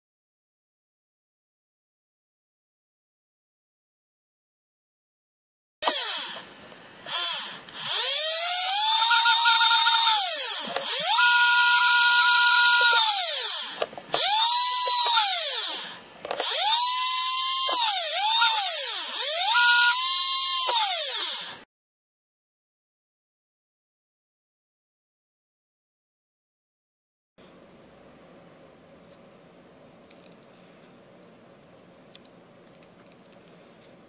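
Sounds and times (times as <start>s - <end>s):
electric motor whine: 5.8s - 21.6s.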